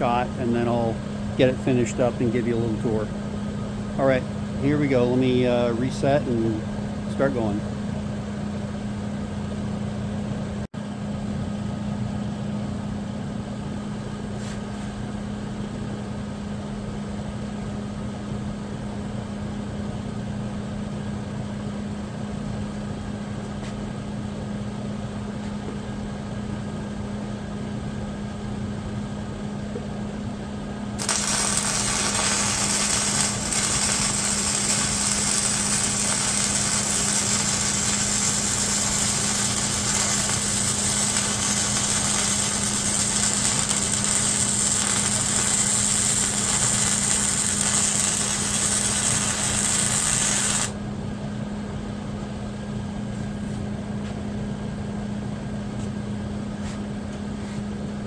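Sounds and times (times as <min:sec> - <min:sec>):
steady machine hum: 0:00.0 - 0:08.3, 0:30.2 - 0:51.8
loud even hiss: 0:31.0 - 0:50.8.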